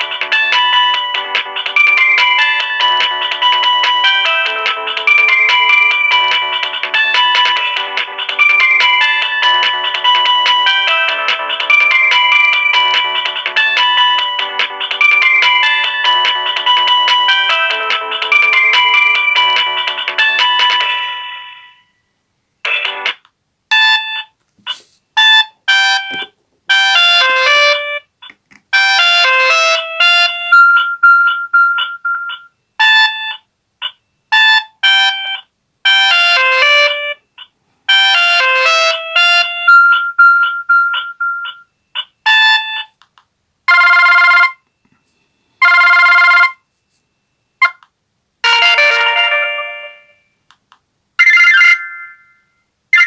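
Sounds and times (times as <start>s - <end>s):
phone ringing tones: 0.0s - 21.8s, 25.2s - 28.1s, 43.7s - 45.0s, 45.6s - 47.8s, 48.4s - 50.4s
phone ringtone melody: 0.0s - 22.0s, 25.2s - 28.1s, 28.8s - 43.0s, 43.7s - 47.8s, 48.4s - 50.4s, 51.2s - 53.0s.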